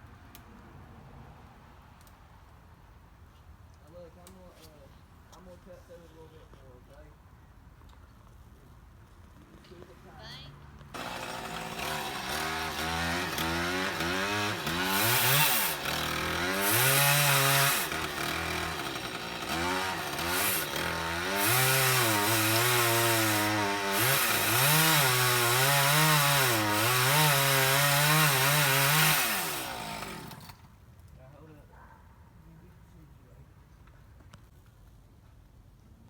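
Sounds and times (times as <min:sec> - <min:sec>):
chainsaw cutting wood: 0:11.0 - 0:30.7.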